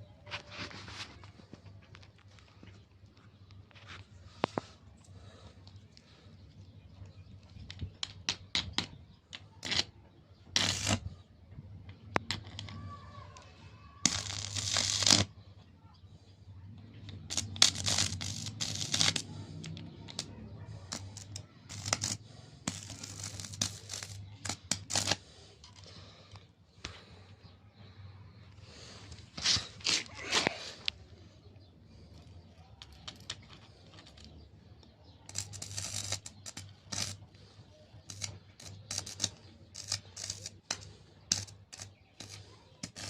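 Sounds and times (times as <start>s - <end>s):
arc welder crackling: 10.6s - 11.0s, 14.0s - 15.3s, 17.0s - 25.3s, 35.2s - 37.3s, 38.0s - 43.0s
sharp electrode ticks: 20.9s - 25.2s, 35.3s - 37.2s, 38.1s - 43.0s.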